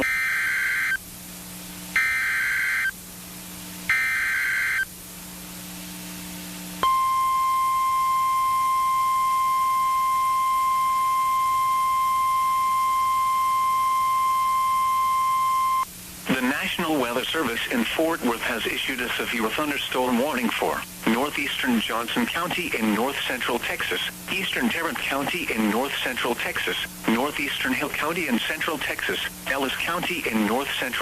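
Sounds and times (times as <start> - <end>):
steady alarm tone: 0.0 - 1.0, 2.0 - 3.0, 3.9 - 4.9, 6.8 - 15.9.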